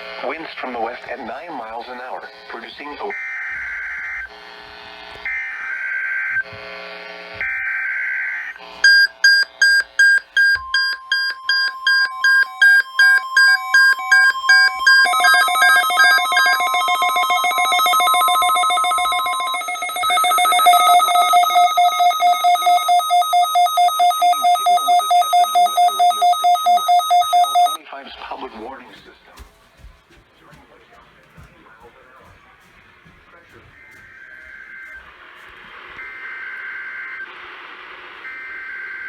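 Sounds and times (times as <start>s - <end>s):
steady warning alarm tone: 0.1s - 27.8s, 33.0s - 37.4s
rapid electronic beeping: 8.8s - 27.8s.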